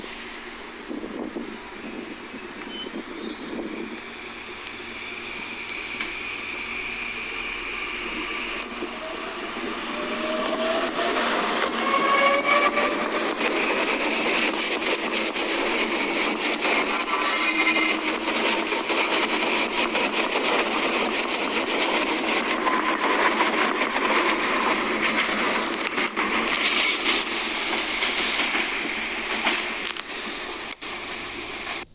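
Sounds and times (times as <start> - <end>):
electric train motors growling: 0.0 - 31.9
whine rising in pitch: 4.4 - 21.2.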